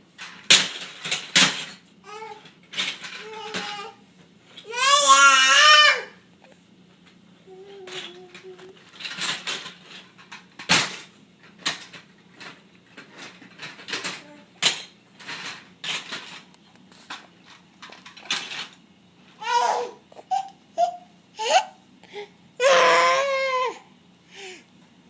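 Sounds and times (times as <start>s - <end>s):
baby breathing: 24.3s - 24.7s.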